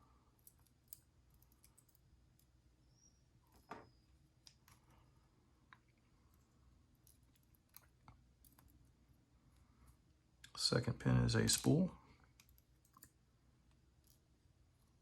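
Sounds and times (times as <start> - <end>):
small metal clicks of tools: 12.4 - 13.1.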